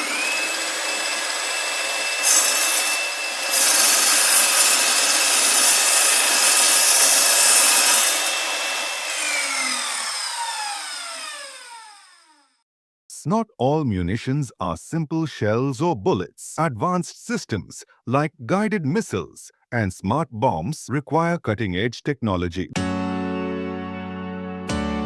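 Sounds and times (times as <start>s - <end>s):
power tool whining: 0.0s - 12.6s.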